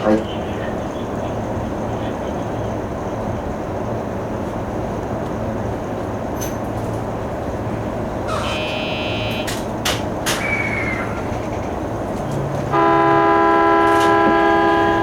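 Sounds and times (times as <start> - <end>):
train horn blast: 8.3 - 9.7, 12.4 - 15.0
steady rumble: 9.6 - 15.0.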